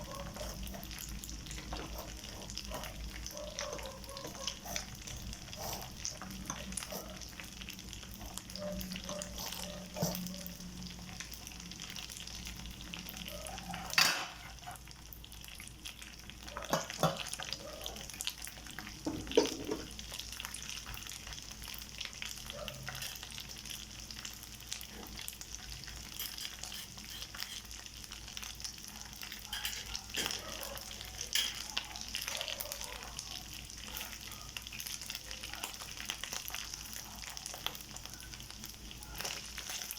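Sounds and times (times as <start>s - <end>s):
spatula scraping a pan: 0.0s - 7.4s, 13.6s - 14.9s, 26.1s - 27.8s
rice sizzling in a pan: 0.0s - 39.9s.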